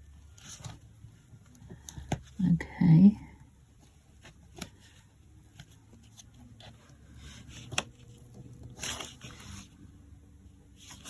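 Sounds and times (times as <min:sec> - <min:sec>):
paper rustling: 0:04.1 - 0:09.9, 0:10.8 - 0:11.0.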